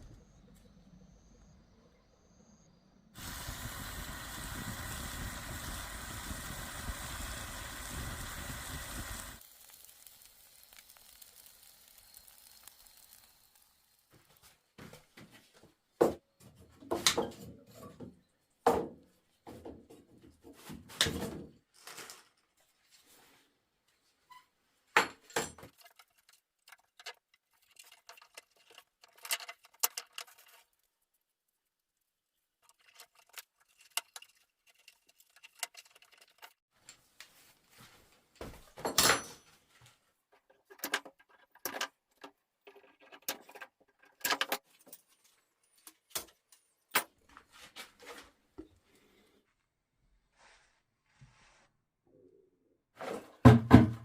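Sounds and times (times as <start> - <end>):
objects knocking and clattering: 53.0 - 54.0.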